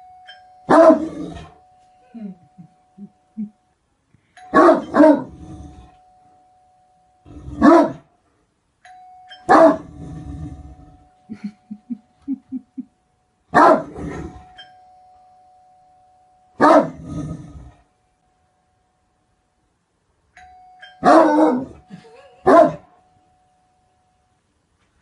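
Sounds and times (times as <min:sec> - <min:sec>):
faint steady tone: 0:00.0 - 0:13.6, 0:14.2 - 0:25.0
large dog barking: 0:00.7 - 0:01.4, 0:04.5 - 0:05.4, 0:07.6 - 0:08.1, 0:09.5 - 0:10.0, 0:13.5 - 0:14.3, 0:16.6 - 0:17.0, 0:21.0 - 0:21.8, 0:22.4 - 0:22.9.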